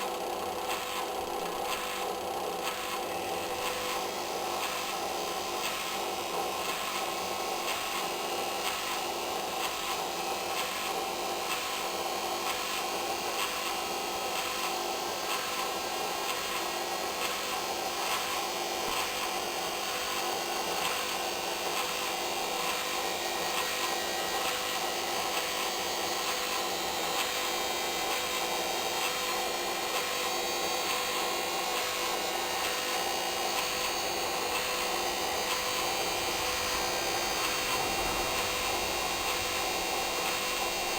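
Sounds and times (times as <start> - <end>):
washing machine motor whine: 32.1 - 40.9.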